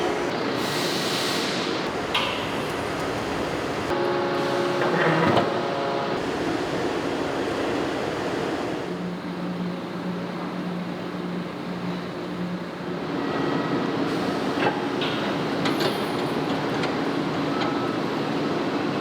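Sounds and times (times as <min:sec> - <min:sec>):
factory machinery din: 0:00.0 - 0:09.0
steady low hum: 0:01.9 - 0:04.7
horn-like machine tone: 0:01.9 - 0:07.9.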